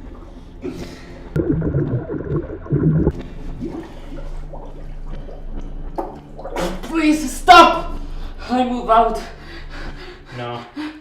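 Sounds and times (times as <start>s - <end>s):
man gurgling and spluttering water: 1.4s - 3.1s.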